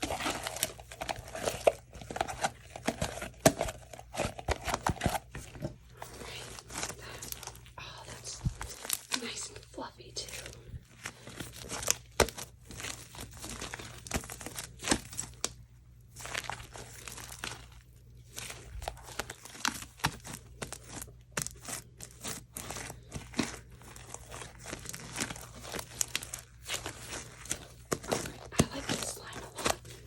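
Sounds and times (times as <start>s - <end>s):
slime being squished by hand: 10.9s - 30.0s.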